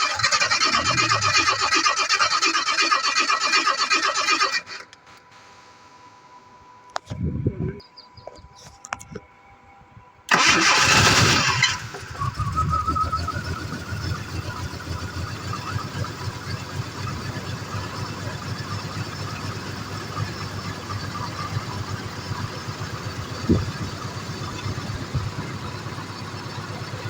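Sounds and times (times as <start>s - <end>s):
car engine idling unevenly: 10.3s - 27.0s.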